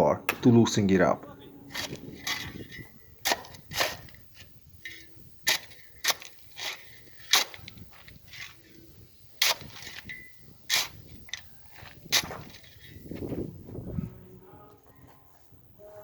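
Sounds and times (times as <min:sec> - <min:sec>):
pry bar striking asphalt: 0:01.7 - 0:08.6, 0:09.4 - 0:13.2.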